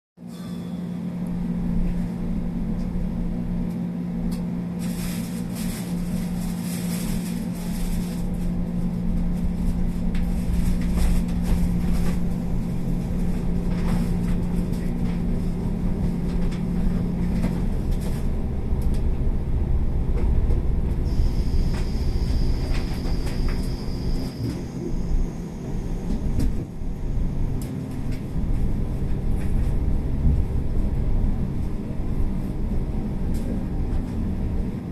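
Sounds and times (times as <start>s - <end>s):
low hum in train car: 0.2s - 34.9s
train rumbling and rattling on track: 0.2s - 34.9s
high steady whine: 9.2s - 33.4s.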